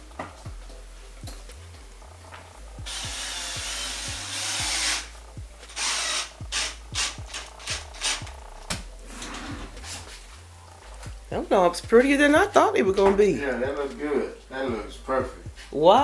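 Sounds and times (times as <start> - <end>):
power drill running: 2.8 - 8.5.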